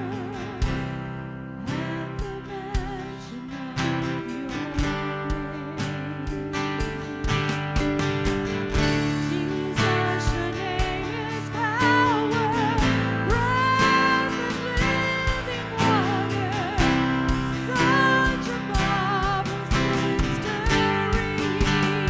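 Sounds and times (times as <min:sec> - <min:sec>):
strummed guitar chords: 0:00.0 - 0:22.0
steady beat: 0:04.8 - 0:22.0.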